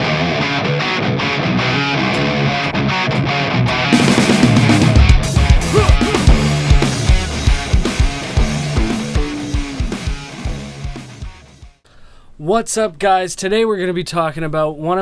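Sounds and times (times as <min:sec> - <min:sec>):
rock music with guitar: 0:00.0 - 0:11.8
strong low beats: 0:04.0 - 0:11.8.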